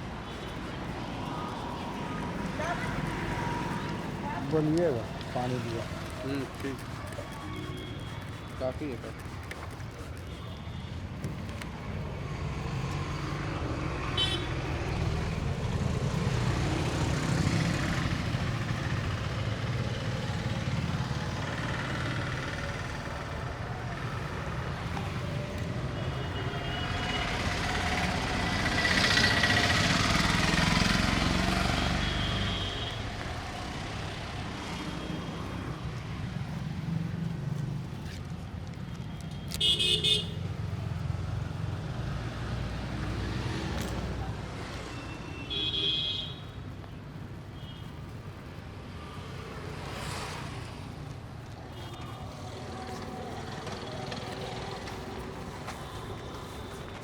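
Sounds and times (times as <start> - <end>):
vehicle passing: 0.0 - 10.2, 11.7 - 38.2
street traffic: 0.0 - 57.0
car horn toots: 39.6 - 40.3.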